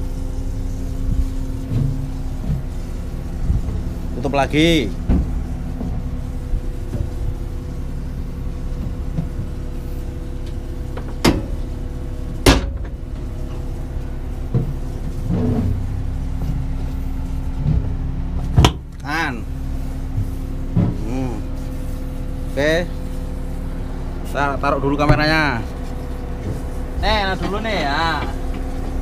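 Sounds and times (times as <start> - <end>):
engine hum: 0.0 - 29.0
metal cover clacking shut: 12.4 - 13.0.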